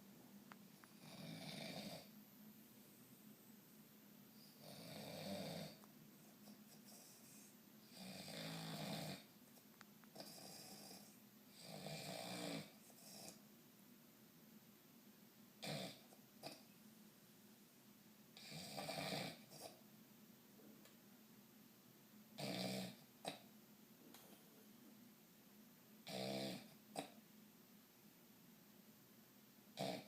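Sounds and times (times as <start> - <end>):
man snoring: 1.0 - 2.1, 4.6 - 5.8, 7.9 - 9.3, 10.2 - 13.4, 15.6 - 16.6, 18.4 - 19.7, 22.4 - 23.0, 26.1 - 26.7, 29.8 - 30.0.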